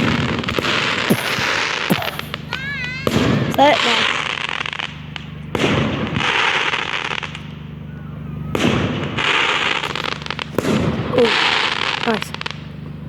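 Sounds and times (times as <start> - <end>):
crackling hiss of firework shells: 0.0 - 8.0, 8.6 - 13.0
firework bangs: 0.0 - 13.0.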